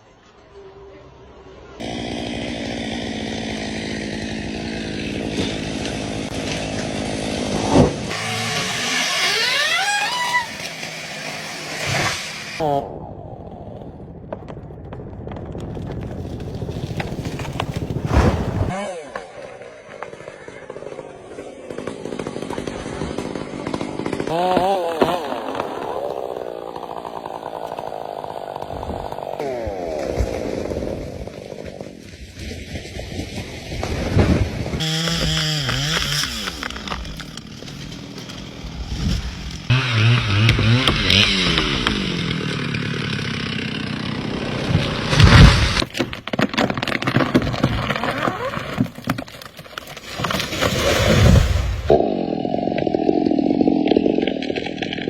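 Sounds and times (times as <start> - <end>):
chainsaw engine revving: 1.8 - 12.7, 18.5 - 32.0, 33.8 - 45.9
wood cracking and snapping: 1.9 - 12.2, 13.8 - 55.0.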